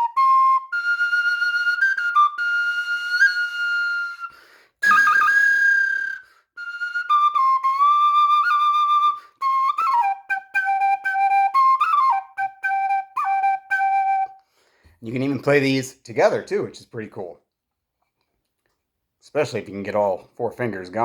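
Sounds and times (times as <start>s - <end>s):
flute melody: 0.0s - 14.6s
player breathing: 4.3s - 4.8s, 14.4s - 15.0s.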